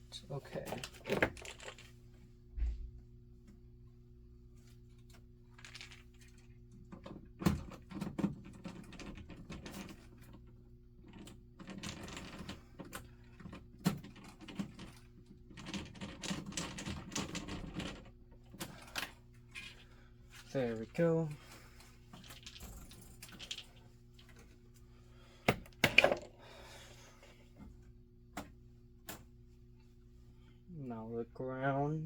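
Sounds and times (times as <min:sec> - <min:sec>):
low electrical hum: 0:00.0 - 0:32.0
wires and small parts clicking: 0:11.0 - 0:24.8.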